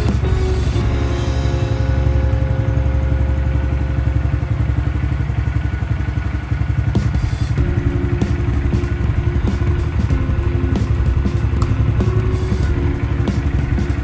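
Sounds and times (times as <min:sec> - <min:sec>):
motorcycle engine idling: 0:00.0 - 0:14.0.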